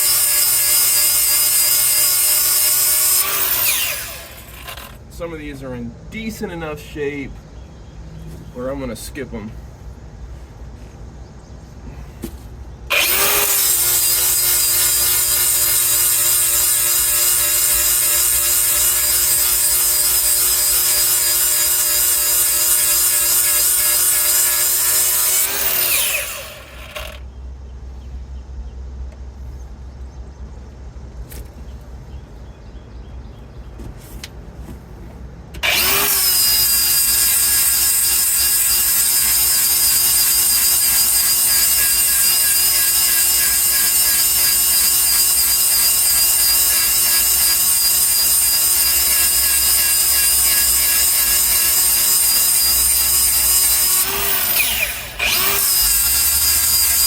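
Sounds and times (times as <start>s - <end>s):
power grinder whining: 0.0s - 5.0s, 12.9s - 27.2s, 35.6s - 57.0s.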